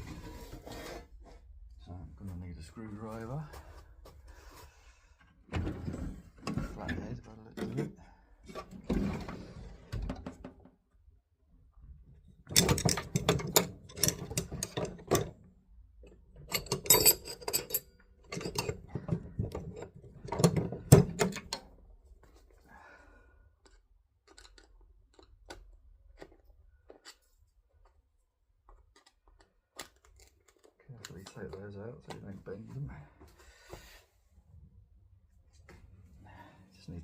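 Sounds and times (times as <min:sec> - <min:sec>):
metal hand tools clattering: 0:16.4 - 0:19.8.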